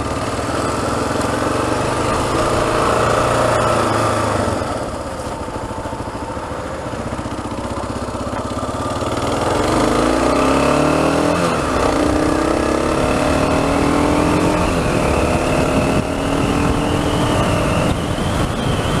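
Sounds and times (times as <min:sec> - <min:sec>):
motorcycle engine accelerating: 0:00.0 - 0:19.0
wind noise: 0:11.2 - 0:19.0.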